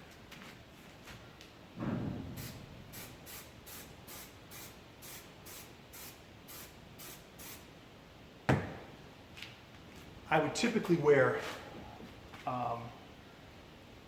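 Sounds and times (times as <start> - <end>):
aerosol can hissing sprays: 2.4 - 7.6.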